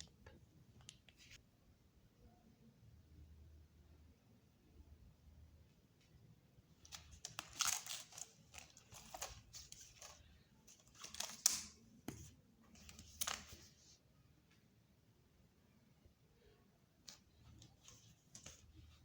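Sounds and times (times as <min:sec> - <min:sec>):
packaging rustling and crinkling: 0:06.9 - 0:11.8.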